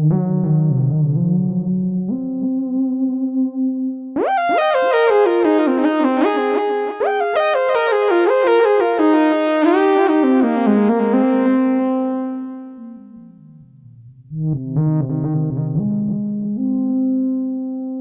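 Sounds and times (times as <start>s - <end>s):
synthesizer notes stepping downward: 0.0s - 18.0s
held low synth notes: 12.0s - 18.0s.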